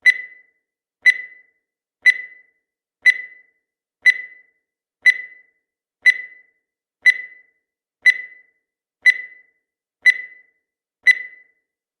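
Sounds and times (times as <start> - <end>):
short high-pitched timer beeps: 0.0 - 11.7.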